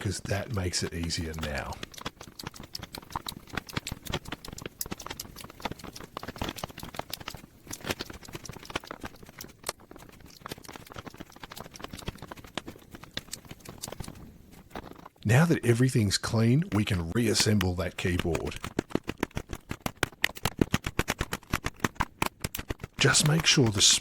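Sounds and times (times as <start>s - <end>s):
keycaps clicking onto stems: 22.8s - 24.0s.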